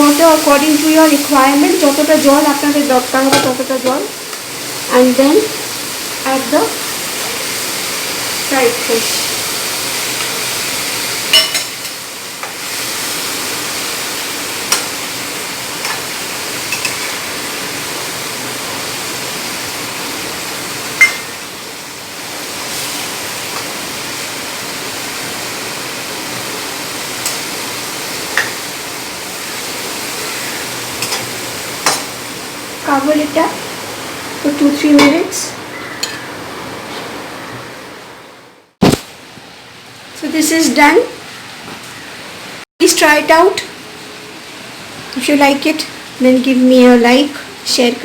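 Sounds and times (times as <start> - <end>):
food sizzling in a pan: 0.0 - 38.1, 38.8 - 48.0
spatula clinking on pan: 11.3 - 11.8, 21.0 - 21.3.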